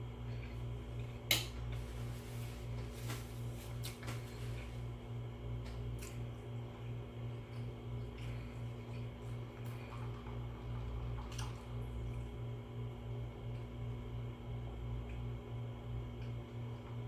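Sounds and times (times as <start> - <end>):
low pulsing hum: 0.0 - 17.0.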